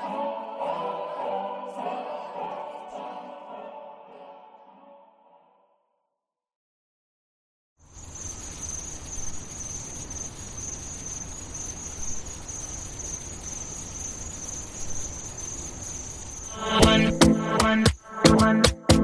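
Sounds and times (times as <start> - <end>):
insects chirring: 7.8 - 18.6.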